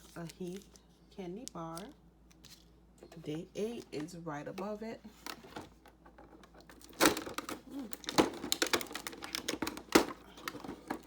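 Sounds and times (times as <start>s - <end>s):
packaging clicking and crinkling: 5.2s - 11.0s
packaging snaps: 6.8s - 11.0s.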